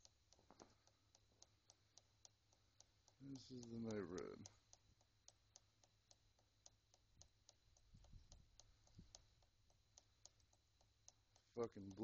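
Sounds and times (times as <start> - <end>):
faint regular ticking: 0.0 - 12.0.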